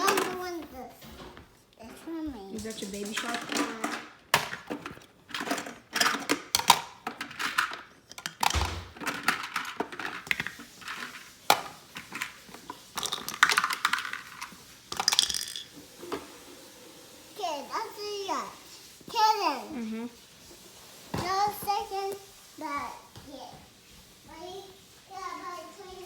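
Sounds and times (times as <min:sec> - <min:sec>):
plastic toys clattering: 0:00.0 - 0:16.2.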